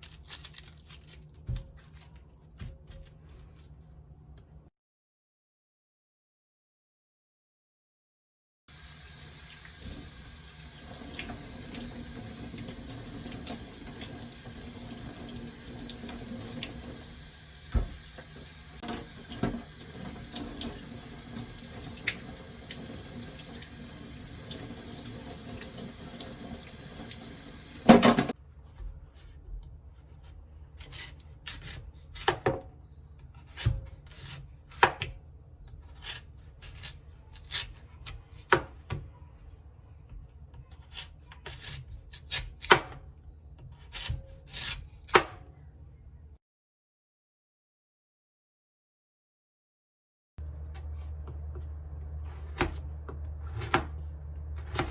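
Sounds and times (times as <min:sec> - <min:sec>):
tap water running into sink: 0:08.8 - 0:28.3.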